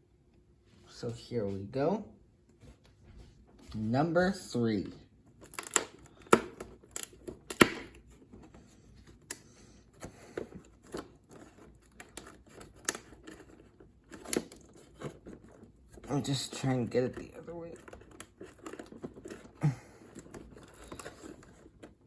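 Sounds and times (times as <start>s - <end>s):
cardboard tearing and crinkling: 5.4s - 8.4s, 9.8s - 22.0s.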